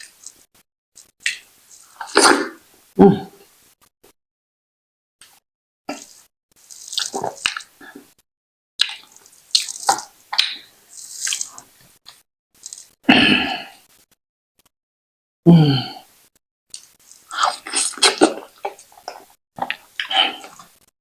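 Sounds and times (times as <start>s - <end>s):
wet eating smacks: 5.9s - 7.8s, 8.8s - 13.0s, 16.7s - 20.7s.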